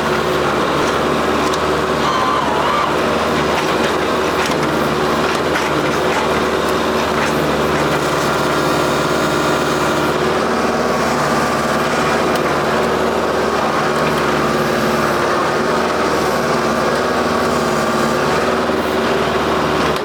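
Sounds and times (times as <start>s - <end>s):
tractor diesel engine running: 0.0s - 20.0s.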